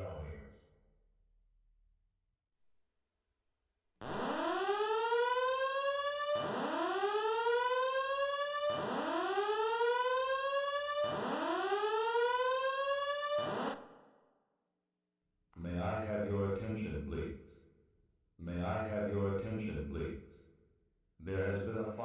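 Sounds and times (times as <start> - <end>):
fire alarm whoop tone: 4.0 - 13.9.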